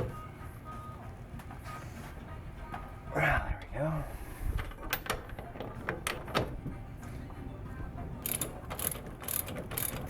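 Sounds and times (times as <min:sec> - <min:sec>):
socket ratchet clicking: 0:08.2 - 0:10.0.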